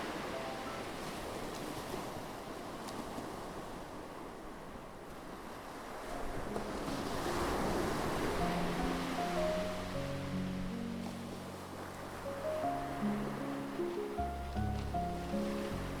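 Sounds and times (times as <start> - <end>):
faint piano notes: 0.0 - 1.6, 6.0 - 16.0
ocean waves washing onto shore: 0.0 - 16.0.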